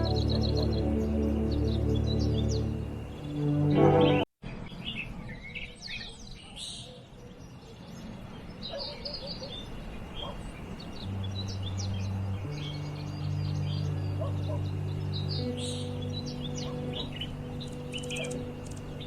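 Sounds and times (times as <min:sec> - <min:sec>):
soft relaxation music: 0:00.0 - 0:04.3, 0:10.8 - 0:19.0
small songbirds chirping: 0:00.0 - 0:19.0.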